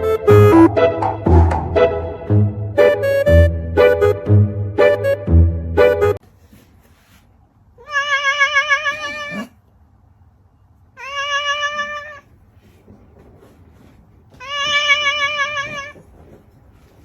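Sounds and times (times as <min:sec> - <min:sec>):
cat meowing: 0:07.8 - 0:09.6, 0:11.0 - 0:12.4, 0:14.3 - 0:16.2.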